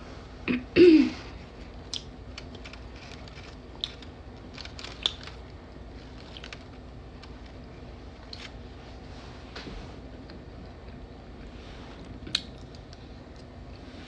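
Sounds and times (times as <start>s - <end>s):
chewing clicks and crunches: 1.7s - 7.6s, 12.2s - 13.5s.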